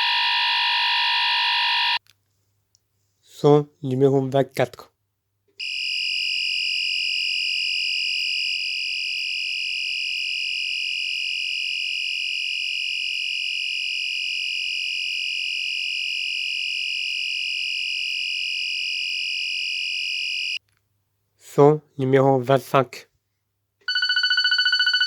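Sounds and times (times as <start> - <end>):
fire alarm tone: 0.0 - 2.0, 5.6 - 20.6, 23.9 - 25.0.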